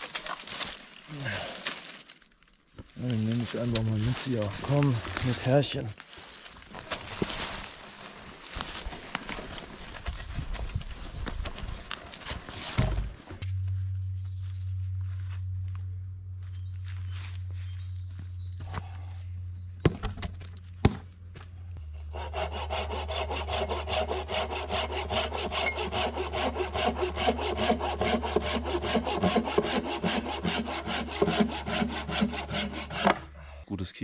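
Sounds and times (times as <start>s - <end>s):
rustling: 0.0s - 15.9s
hand saw cutting wood: 22.0s - 33.3s.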